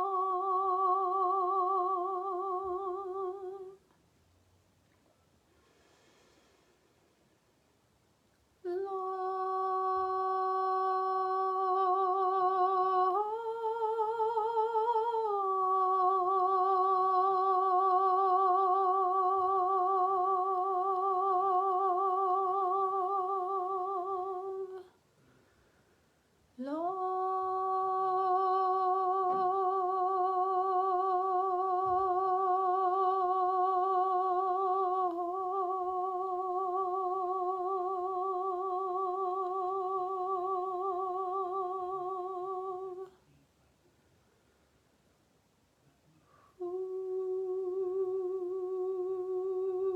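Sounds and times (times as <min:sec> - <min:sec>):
woman breathing: 0:05.5 - 0:07.2, 0:25.2 - 0:26.4
woman humming: 0:08.7 - 0:25.0, 0:26.6 - 0:43.2, 0:46.6 - 0:49.9.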